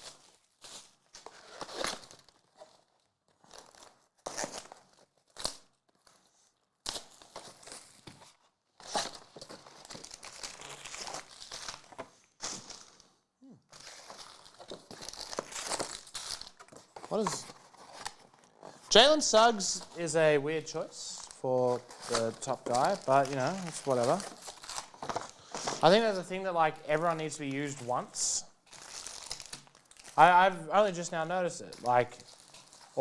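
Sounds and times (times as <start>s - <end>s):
wrappers crinkling and tearing: 0.0s - 33.0s
cards being handled: 16.8s - 20.1s, 20.7s - 28.0s.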